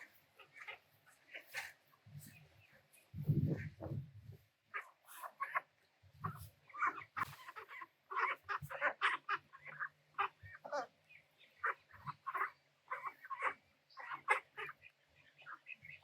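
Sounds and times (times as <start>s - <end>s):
ducks quacking quickly: 4.7s - 10.9s, 11.6s - 16.0s.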